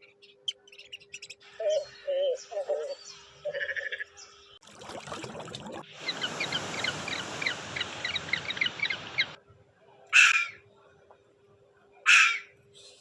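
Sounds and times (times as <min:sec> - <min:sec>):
steady rushing hiss: 0:05.9 - 0:09.4
loud bird call: 0:06.0 - 0:09.4.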